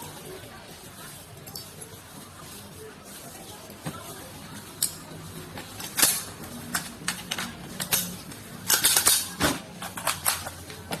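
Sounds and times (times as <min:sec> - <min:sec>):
rifle parts clicking and clacking: 0:04.8 - 0:11.0.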